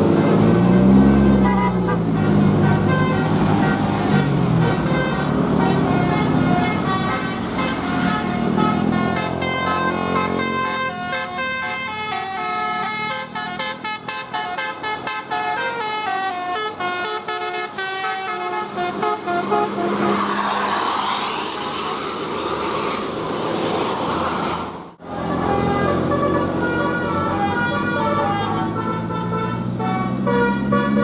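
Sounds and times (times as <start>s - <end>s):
bus multi-tone horn tune: 0.0s - 20.6s, 25.0s - 31.0s
vehicle engine and road noise: 0.0s - 31.0s.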